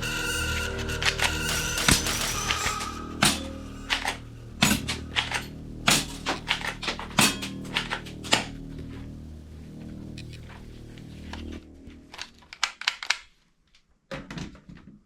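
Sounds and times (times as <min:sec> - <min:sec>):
background music: 0:00.0 - 0:13.2
plastic toy gun clacking: 0:12.2 - 0:13.3.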